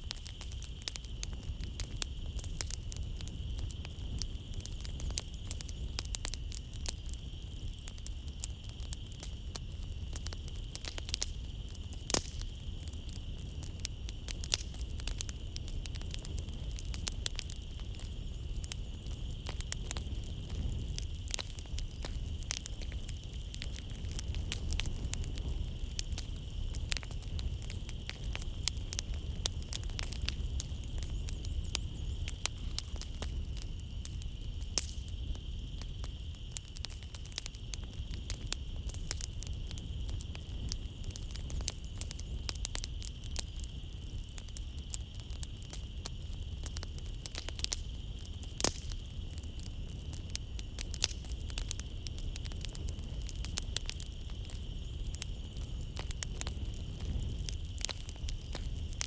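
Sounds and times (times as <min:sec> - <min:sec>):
night insects chorus: 0:00.0 - 0:59.0
wood fire crackling: 0:00.0 - 0:59.0.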